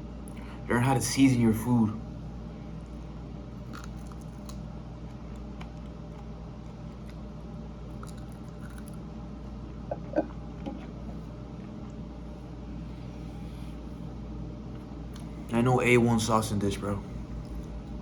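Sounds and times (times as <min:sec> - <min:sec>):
low hum: 0:00.0 - 0:18.0
person chewing meat: 0:03.6 - 0:12.4.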